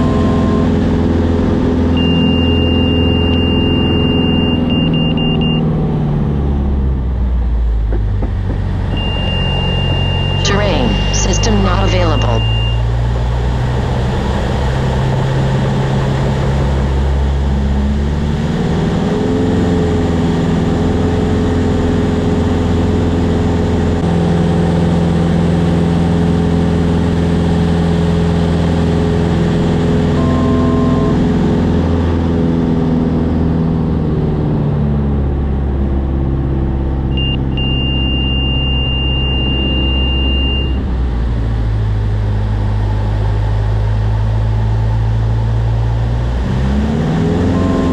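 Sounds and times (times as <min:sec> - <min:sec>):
propeller plane engine drone: 0:00.0 - 0:47.9
high steady beep: 0:09.0 - 0:12.8, 0:30.2 - 0:31.2, 0:37.2 - 0:40.8, 0:47.6 - 0:47.9.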